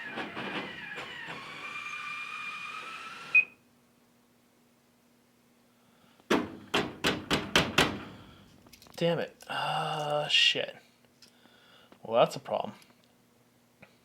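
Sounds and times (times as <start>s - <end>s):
vending machine motor whirring: 0.0s - 3.4s
quick knocks: 6.3s - 8.4s.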